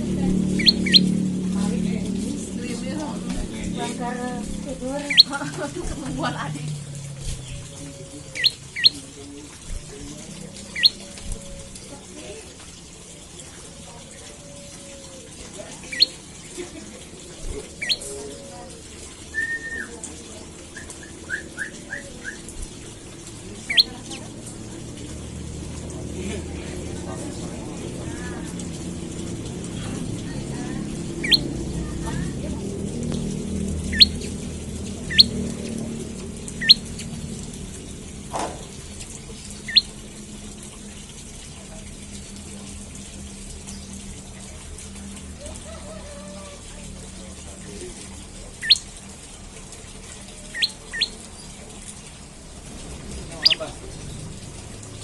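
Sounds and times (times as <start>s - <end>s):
steady low hum: 0.0s - 15.0s, 20.3s - 45.8s
bird calling: 0.4s - 1.3s, 4.7s - 6.3s, 7.2s - 12.2s, 13.6s - 16.3s, 17.6s - 24.4s, 31.0s - 32.4s, 33.8s - 34.4s, 35.0s - 35.7s, 36.4s - 37.1s, 39.4s - 40.0s, 48.6s - 48.9s, 50.4s - 51.3s, 53.2s - 53.8s
bird chirps sweeping upward: 0.5s - 1.2s, 8.3s - 9.0s, 10.7s - 11.1s, 23.6s - 24.2s, 31.2s - 31.5s, 33.8s - 34.4s, 35.1s - 35.4s, 36.6s - 37.1s, 39.7s - 39.9s, 50.5s - 51.1s, 53.4s - 53.6s.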